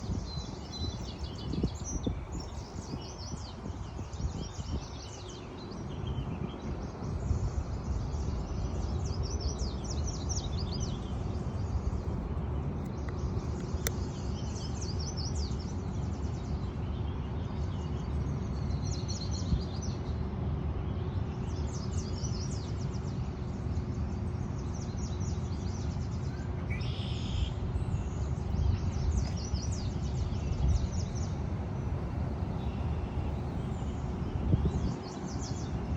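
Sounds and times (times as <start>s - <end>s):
steady low rumble: 0.0s - 17.4s, 27.6s - 35.9s
small birds chirping: 0.0s - 20.3s, 20.9s - 35.9s.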